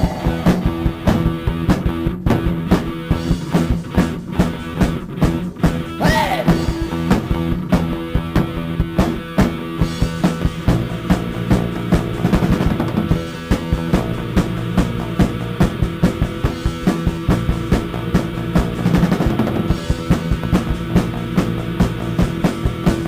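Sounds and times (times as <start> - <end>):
swooping pitched sound: 0.0 - 1.4
drum kit beat: 0.0 - 23.0
instrumental rock band: 0.0 - 23.0.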